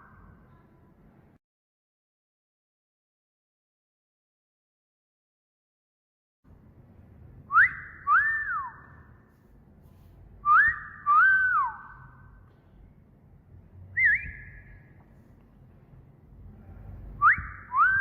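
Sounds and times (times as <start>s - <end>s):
wolf whistle: 7.5s - 9.0s, 10.4s - 12.3s, 14.0s - 14.8s, 17.2s - 18.0s
short wavering whistle: 7.5s - 9.1s, 10.4s - 12.3s, 14.0s - 14.8s, 17.2s - 18.0s.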